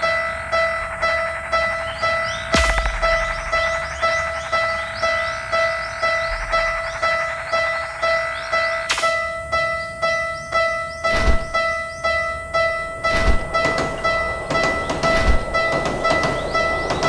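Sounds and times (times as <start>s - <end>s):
low thud: 2.6s - 3.8s.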